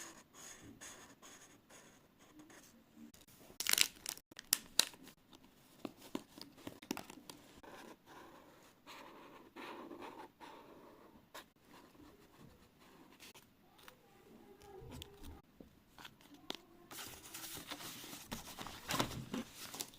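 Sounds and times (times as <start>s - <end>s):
paper rustling and light taps: 16.0s - 19.9s.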